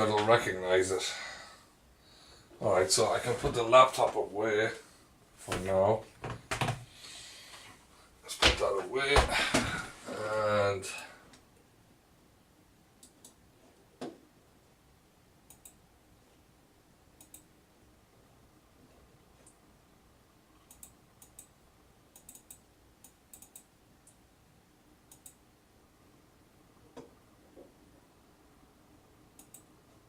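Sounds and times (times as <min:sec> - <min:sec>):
computer mouse clicks: 0:13.0 - 0:13.4, 0:15.5 - 0:15.8, 0:17.2 - 0:17.5, 0:20.6 - 0:24.2, 0:25.1 - 0:25.4, 0:29.4 - 0:29.7.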